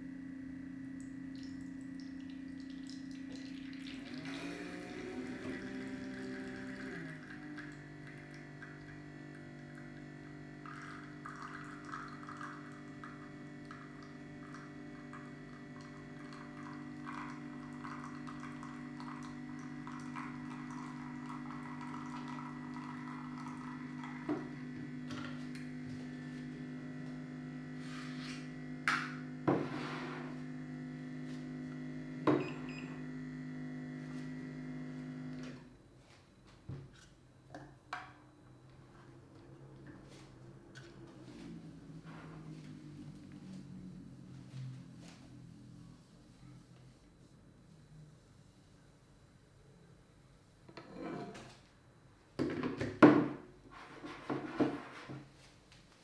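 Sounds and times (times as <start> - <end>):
milk frother motor hum: 0.0 - 35.8
crackling fizz of frothing milk: 1.4 - 24.6.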